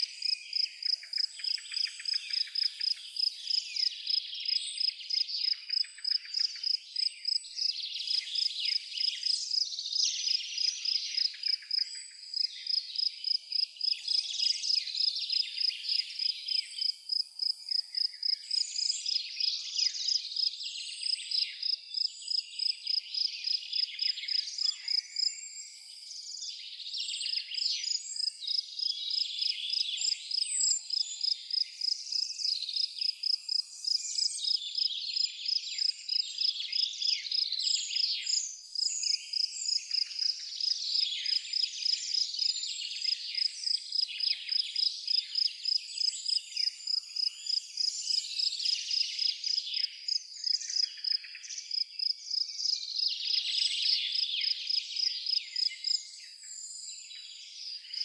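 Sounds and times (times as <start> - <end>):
birds singing and chirping: 0.0 - 58.0
crickets chirping: 28.2 - 53.4.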